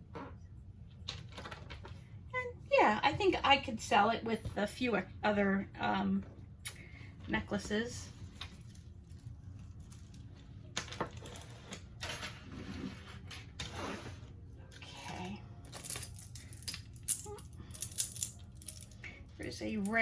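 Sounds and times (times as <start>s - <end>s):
metal chains and beads clinking: 15.0s - 20.0s.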